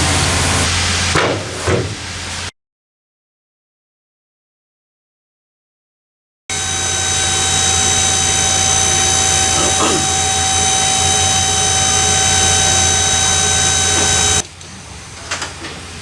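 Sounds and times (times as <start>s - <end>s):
machine whining over low hum: 6.5s - 14.4s.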